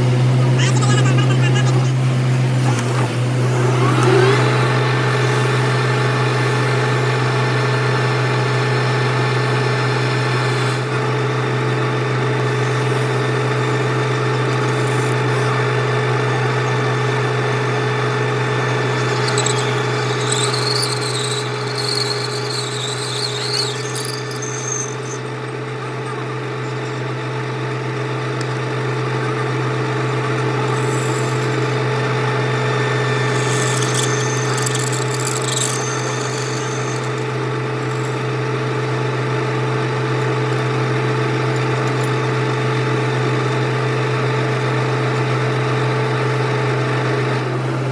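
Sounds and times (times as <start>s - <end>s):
metal lathe humming: 0.0s - 47.8s
high squeal of metal cutting: 14.4s - 27.6s, 29.4s - 42.2s.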